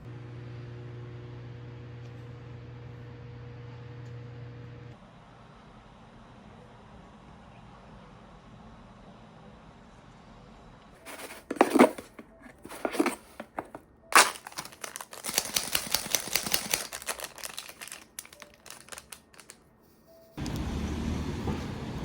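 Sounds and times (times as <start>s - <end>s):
material crinkling and rustling: 11.0s - 19.6s.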